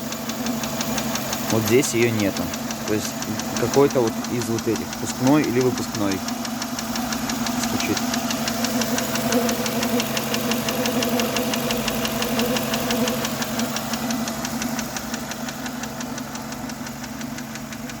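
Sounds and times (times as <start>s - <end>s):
car engine idling: 0.0s - 18.0s
rapid ticking knock: 0.0s - 18.0s.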